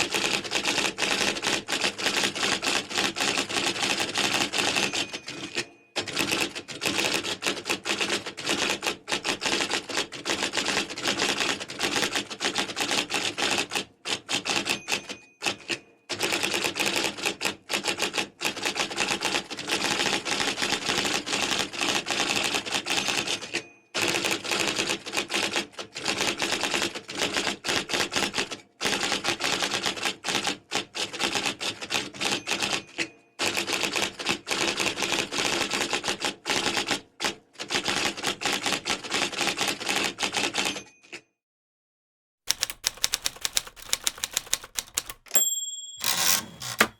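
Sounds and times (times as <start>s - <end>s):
typewriter carriage bell: 3.3s - 7.2s, 14.4s - 16.5s, 32.2s - 33.1s, 42.5s - 46.9s
typewriter typing: 42.5s - 46.9s.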